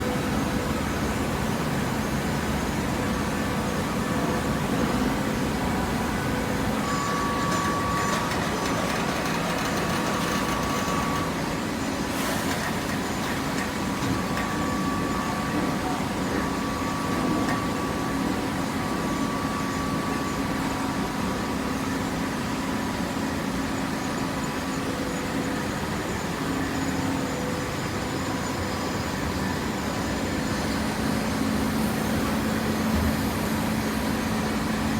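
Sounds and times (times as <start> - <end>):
baler machine drone: 0.0 - 22.2
hydraulic pump whining: 4.8 - 20.0.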